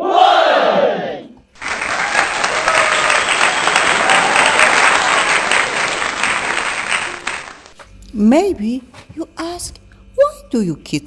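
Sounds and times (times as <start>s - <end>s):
crowd shouting: 0.0s - 7.7s
crowd clapping: 1.5s - 7.8s.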